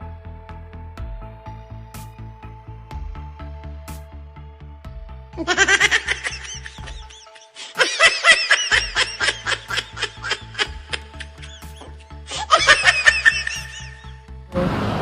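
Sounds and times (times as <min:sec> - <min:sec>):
background music with steady beat: 0:00.0 - 0:15.0
high-pitched laughter: 0:05.4 - 0:14.2.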